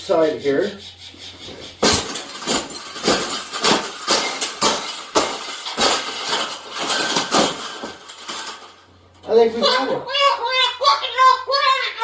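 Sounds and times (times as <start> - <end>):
bird cage clattering and crackling: 1.7 - 9.3.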